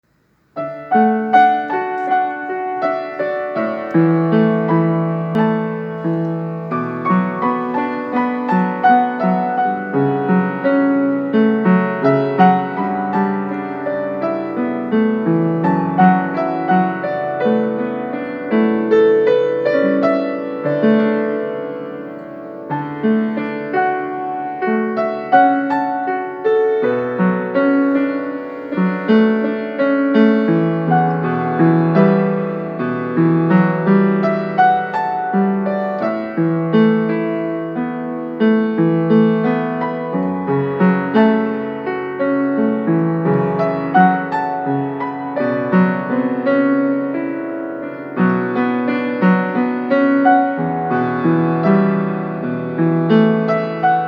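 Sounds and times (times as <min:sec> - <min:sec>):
slow gentle piano melody: 0:00.1 - 0:54.0.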